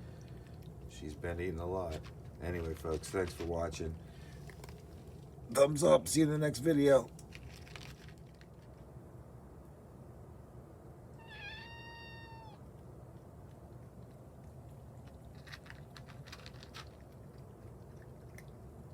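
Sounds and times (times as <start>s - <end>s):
cat meowing: 11.2s - 12.7s.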